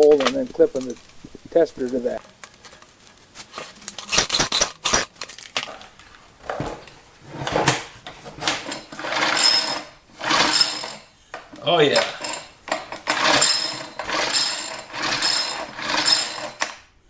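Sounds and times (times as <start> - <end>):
recoil starter rope pulled: 0.0 - 5.6, 8.4 - 11.0, 11.8 - 16.8
metal tools clinking: 0.0 - 5.8, 8.5 - 11.1, 11.7 - 16.8
small engine turning over: 3.5 - 5.4, 8.8 - 11.1, 12.0 - 16.8.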